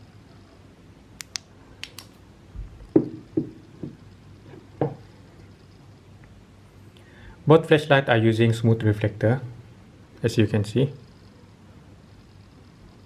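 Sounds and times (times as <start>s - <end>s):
flashlight clicks: 1.2s - 2.2s
dull knocks: 2.9s - 4.0s.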